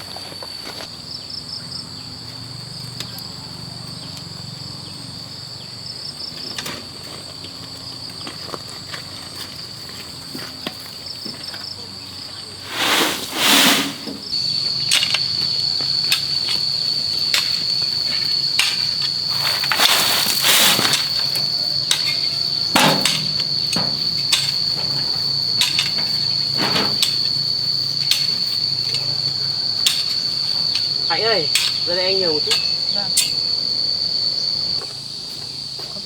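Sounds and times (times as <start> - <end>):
hand tools knocking and scraping: 12.7 - 34.8
high-pitched insect drone: 14.3 - 35.8.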